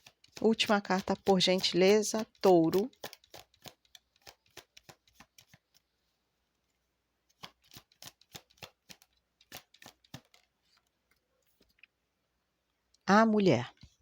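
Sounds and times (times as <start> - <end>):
cards being shuffled: 0.0 - 5.9, 7.2 - 11.8.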